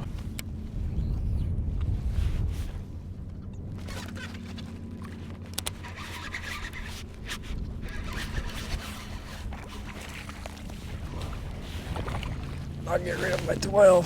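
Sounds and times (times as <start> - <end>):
wind rumbling on microphone: 0.0 - 14.0
gear scraping and clicking: 3.4 - 9.9.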